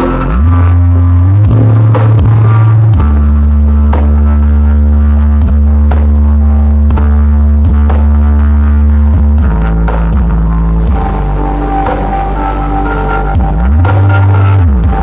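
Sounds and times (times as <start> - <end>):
heavy bass notes: 0.0 - 15.0
drum hits: 1.4 - 3.2.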